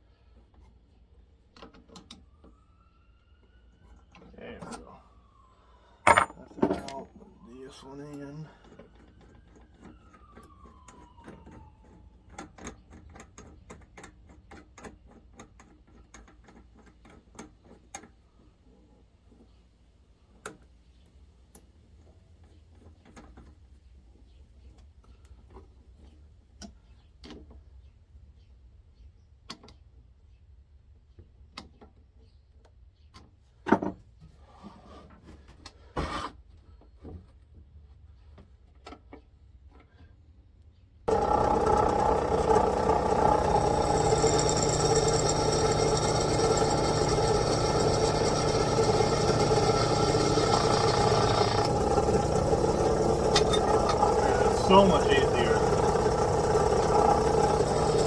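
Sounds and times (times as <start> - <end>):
drill press running: 41.1 - 58.0.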